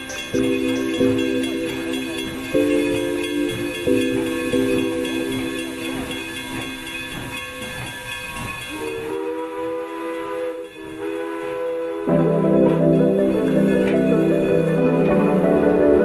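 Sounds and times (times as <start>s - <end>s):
steam hissing: 0.0s - 12.5s
steam locomotive chime whistle: 0.0s - 16.0s.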